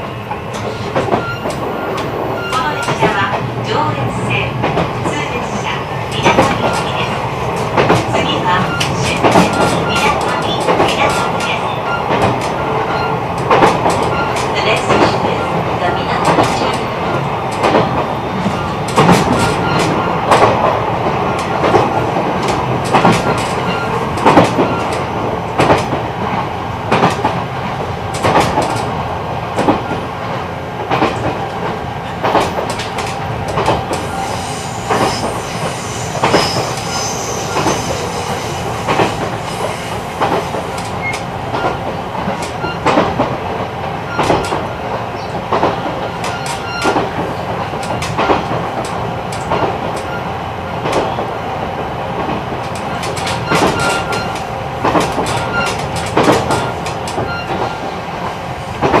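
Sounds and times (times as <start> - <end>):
train rumbling: 0.0 - 59.0
wheels clattering over rail joints: 6.2 - 34.2, 52.1 - 59.0.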